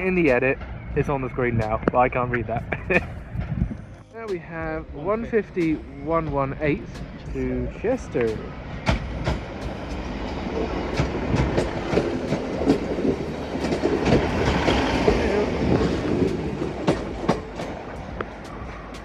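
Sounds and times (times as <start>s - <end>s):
train rumbling: 0.0s - 19.0s
train wheels clicking over rail joints: 4.3s - 19.0s.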